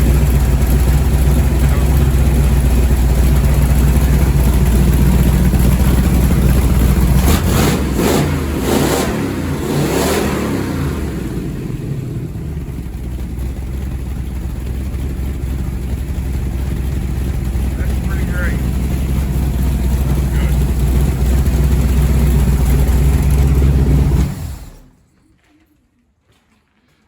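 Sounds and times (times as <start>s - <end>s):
car engine revving and idling: 0.0s - 25.0s.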